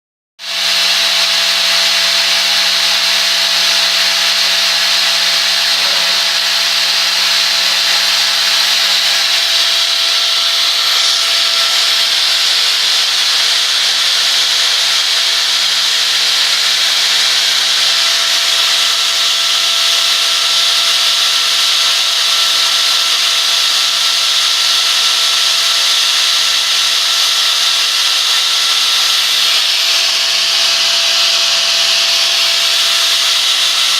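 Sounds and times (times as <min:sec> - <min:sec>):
grinding wheel hiss: 0:00.4 - 0:33.9
motor whine: 0:00.4 - 0:33.9.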